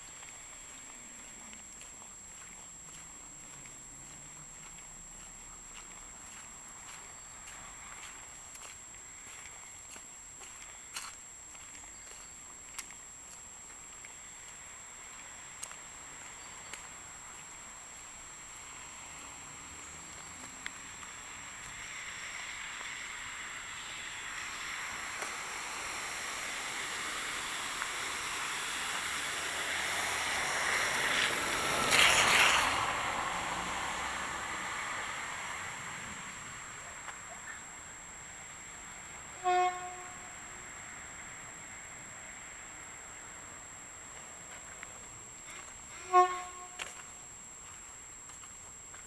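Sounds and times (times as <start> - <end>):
vehicle passing on wet road: 17.0 - 37.2.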